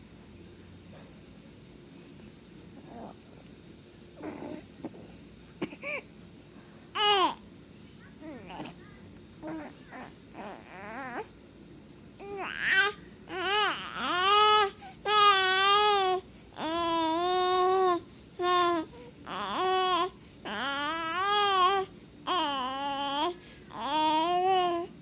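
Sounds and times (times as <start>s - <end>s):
baby crying: 9.4s - 11.3s.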